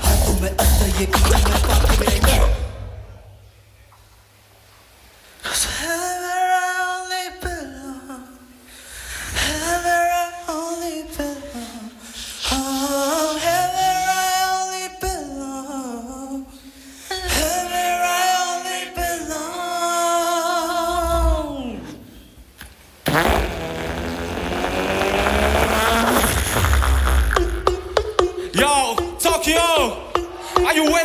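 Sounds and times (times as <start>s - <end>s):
a cappella harmonized singing: 0.0s - 2.9s, 5.4s - 22.4s
loud wall of sound with heavy bass: 0.0s - 4.5s, 23.0s - 31.0s.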